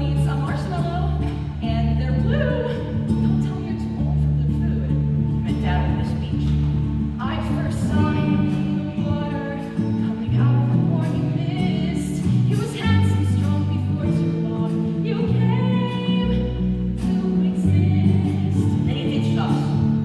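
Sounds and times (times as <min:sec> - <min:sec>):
sustained bass notes: 0:00.0 - 0:20.0.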